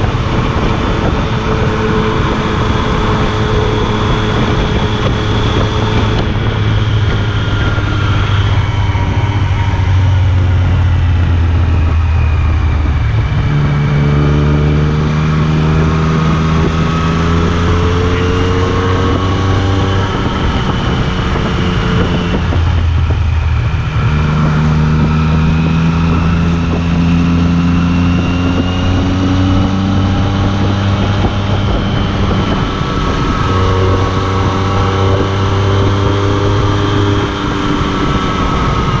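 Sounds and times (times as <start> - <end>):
motorcycle engine revving: 0.0 - 39.0.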